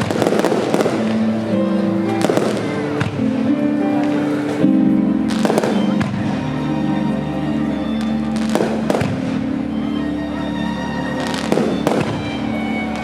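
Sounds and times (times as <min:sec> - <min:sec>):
fireworks bursting: 0:00.0 - 0:04.6, 0:05.2 - 0:09.7, 0:11.1 - 0:13.0
music with long held notes: 0:00.0 - 0:13.0.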